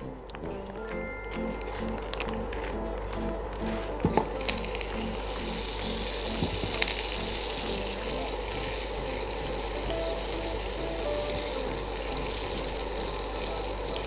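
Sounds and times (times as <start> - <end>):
background music: 0.0 - 14.0
butter sizzling in a hot pan: 4.1 - 14.0.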